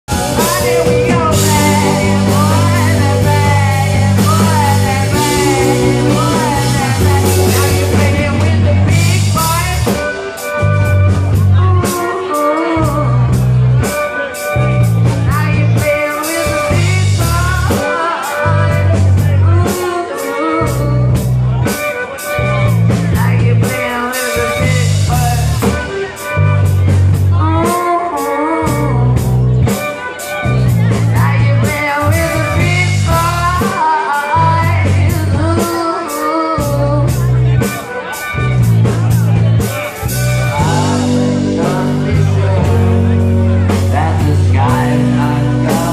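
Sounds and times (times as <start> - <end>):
bass guitar choppy rhythm: 0.0 - 45.9
drums: 0.0 - 45.9
person singing: 0.0 - 45.9
electric guitar: 0.1 - 45.9.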